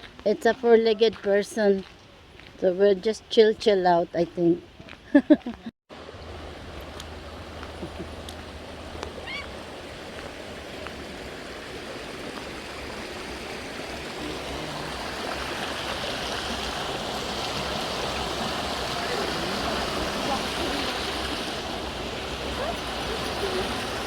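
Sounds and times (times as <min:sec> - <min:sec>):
creek water rushing over rocks: 0:05.9 - 0:24.0.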